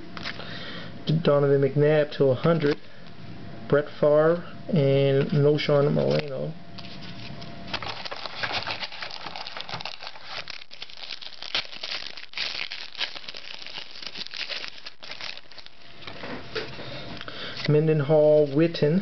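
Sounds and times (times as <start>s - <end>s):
foil wrapper crinkling: 6.0s - 16.1s.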